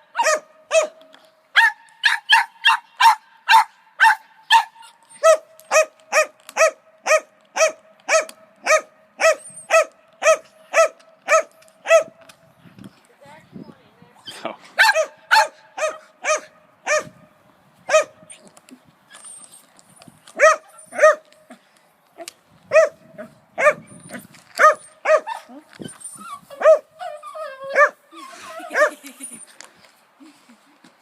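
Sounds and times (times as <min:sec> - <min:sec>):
dog barking: 0:01.6 - 0:12.1, 0:14.8 - 0:17.1, 0:20.4 - 0:21.2, 0:22.7 - 0:23.0, 0:23.6 - 0:23.8, 0:24.6 - 0:25.4.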